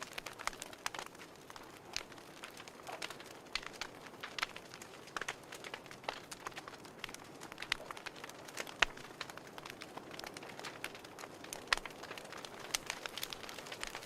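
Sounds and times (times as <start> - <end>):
fire crackling and popping: 0.0 - 14.0.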